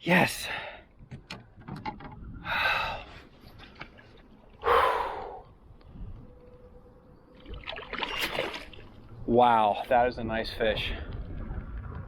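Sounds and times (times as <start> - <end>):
man exhaling heavily: 4.6 - 5.5.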